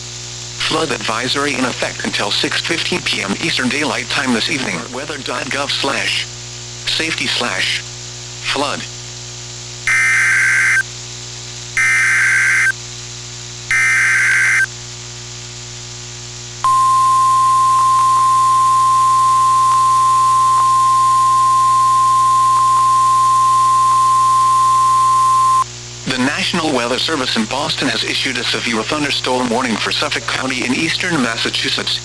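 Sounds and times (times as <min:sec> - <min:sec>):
low electrical hum: 0:00.0 - 0:32.0
digital data tone bursts: 0:09.9 - 0:10.8, 0:11.8 - 0:12.8, 0:13.7 - 0:14.7, 0:16.7 - 0:25.7
harsh digital screech: 0:09.9 - 0:10.8, 0:11.8 - 0:12.7, 0:13.7 - 0:14.7
steady warning alarm tone: 0:09.9 - 0:10.8, 0:11.8 - 0:12.8, 0:13.7 - 0:14.7, 0:16.6 - 0:25.7.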